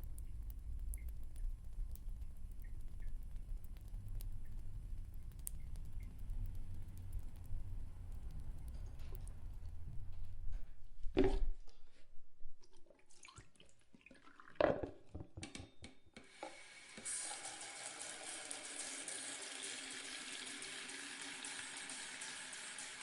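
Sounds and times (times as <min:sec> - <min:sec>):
water running into sink: 0:16.2 - 0:23.0.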